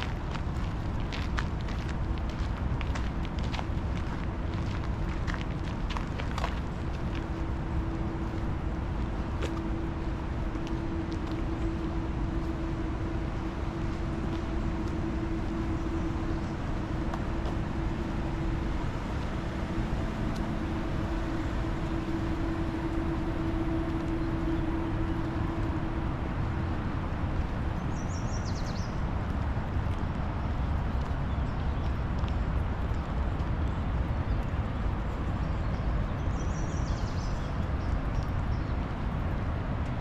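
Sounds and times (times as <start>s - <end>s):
distant motor humming: 6.7s - 28.5s
bird chirp: 27.7s - 29.0s, 35.5s - 38.7s.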